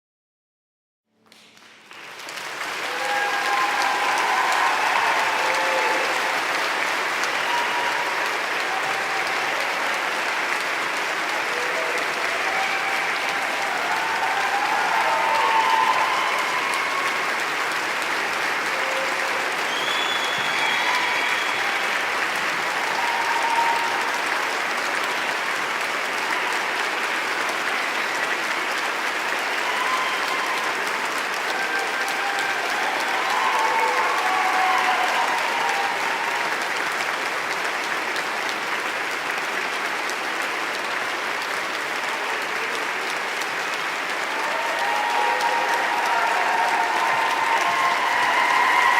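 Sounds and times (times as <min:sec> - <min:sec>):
crowd applauding: 0:01.2 - 0:48.9.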